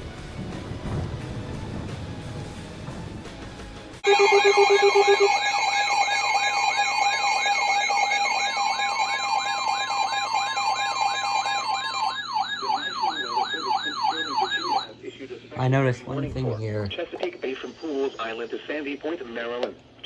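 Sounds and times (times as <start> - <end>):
electronic sirens yelping and warbling: 4.0 - 14.9
short beeps: 4.0 - 14.9.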